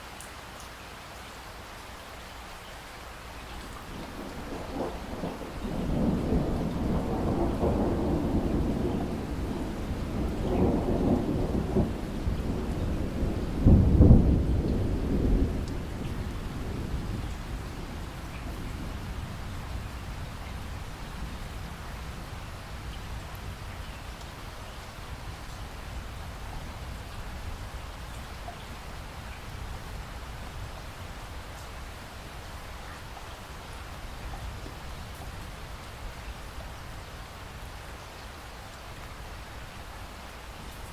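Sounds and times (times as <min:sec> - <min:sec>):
steady rain: 0:00.0 - 0:40.9
rolling thunder: 0:03.9 - 0:23.7.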